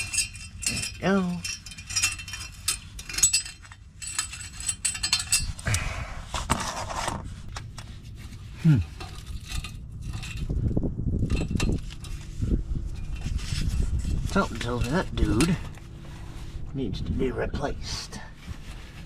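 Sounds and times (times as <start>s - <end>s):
metal clinking and scraping: 0.0s - 19.0s.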